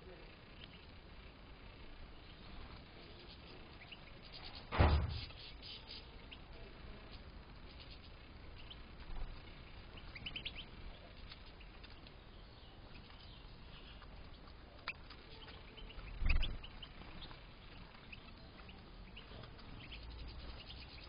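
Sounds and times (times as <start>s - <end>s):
finches chirping: 1.8s - 21.0s
dull thump: 4.7s - 5.3s.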